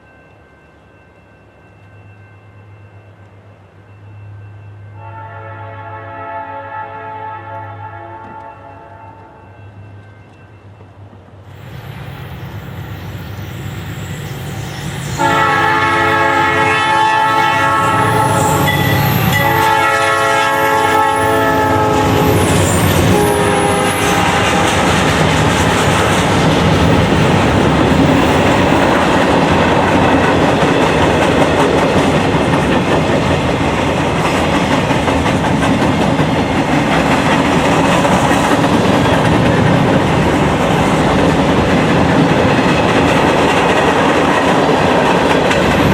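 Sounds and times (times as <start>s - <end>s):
freight train rumbling by: 0.0s - 45.9s
locomotive horn blasts: 5.0s - 9.4s, 15.2s - 25.0s.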